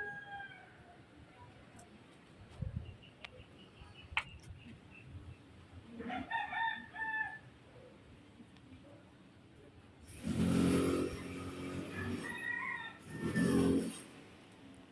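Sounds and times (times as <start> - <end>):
rooster crowing: 0.0 - 1.0, 6.0 - 7.5, 11.8 - 13.9.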